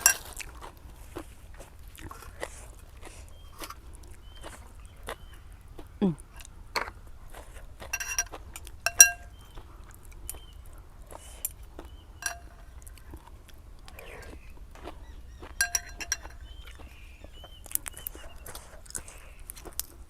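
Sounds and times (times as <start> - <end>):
spoon clinking against a bowl: 0.0 - 0.3, 7.9 - 9.4, 12.2 - 12.9, 15.5 - 17.0.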